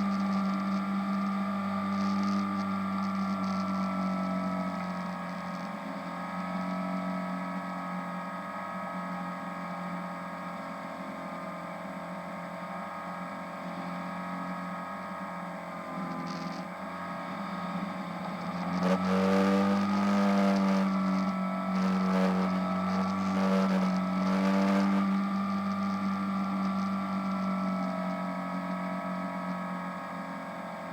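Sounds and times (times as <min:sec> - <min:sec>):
model airplane motor drone: 0:00.0 - 0:10.4, 0:13.8 - 0:30.9.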